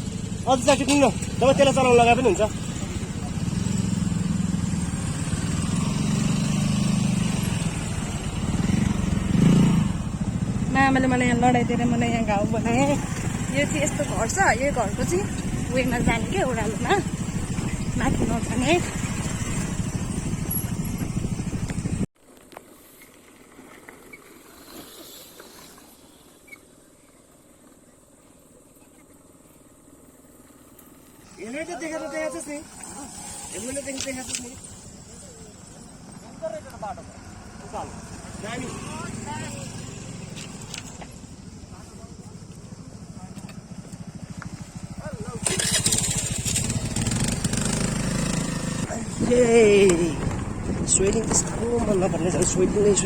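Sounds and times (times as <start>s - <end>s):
motor scooter engine running: 0.0s - 22.1s, 27.7s - 53.0s.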